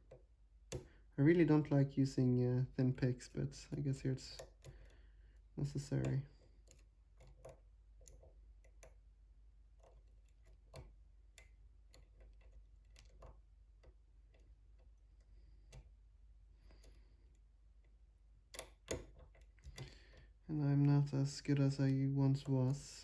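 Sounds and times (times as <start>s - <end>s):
lock pick clicking in lock: 18.5s - 20.0s.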